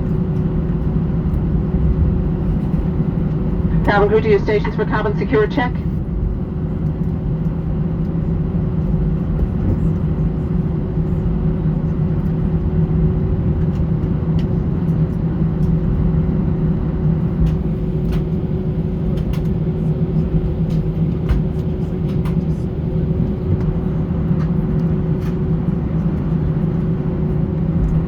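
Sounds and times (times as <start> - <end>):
aircraft cabin engine rumble: 0.0 - 28.0
fainter higher hum: 3.5 - 6.0.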